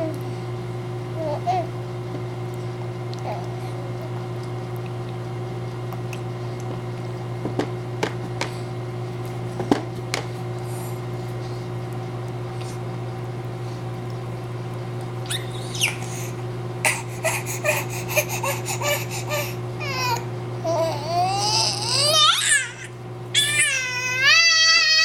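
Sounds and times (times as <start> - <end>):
low electrical hum: 0.0 - 25.0
baby crying: 16.9 - 25.0.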